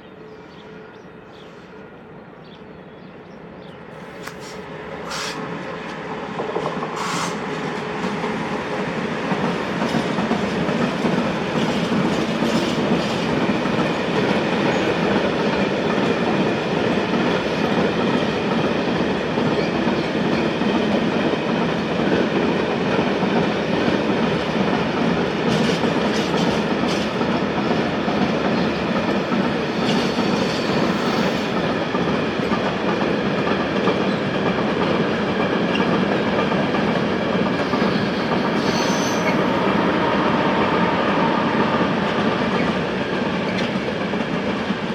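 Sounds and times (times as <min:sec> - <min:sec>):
train rolling past: 0:00.0 - 0:44.9
faint wheel squeal: 0:38.6 - 0:39.4.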